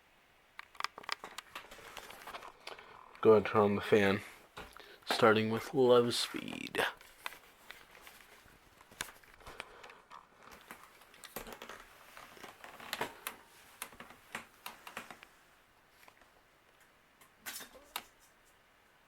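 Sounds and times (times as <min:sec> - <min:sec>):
light clicks and rustles: 0:00.6 - 0:03.5, 0:06.4 - 0:18.6.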